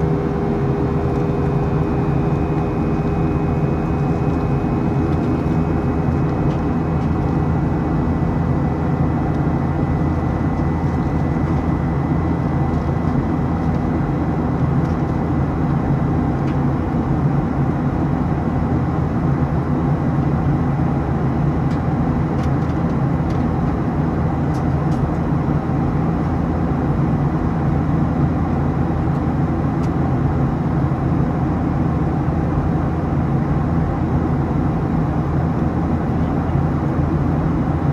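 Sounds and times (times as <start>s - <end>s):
jet engine rumble: 0.0s - 18.2s.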